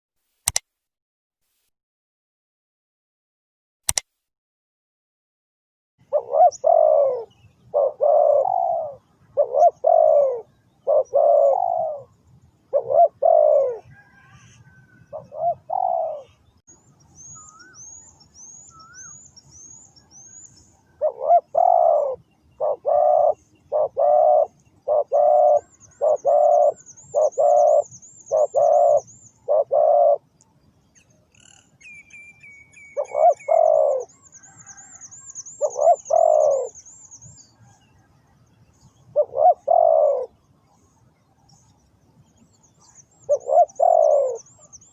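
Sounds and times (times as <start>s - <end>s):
doves cooing: 6.1s - 16.4s, 21.0s - 30.2s, 33.0s - 36.8s, 39.1s - 40.9s, 42.9s - 44.6s
small bird chirping: 15.3s - 44.9s.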